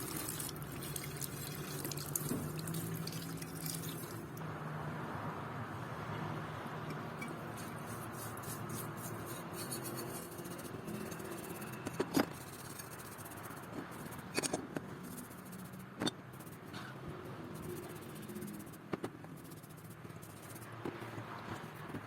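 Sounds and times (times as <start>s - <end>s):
faint rubbing and scraping: 7.2s - 22.0s.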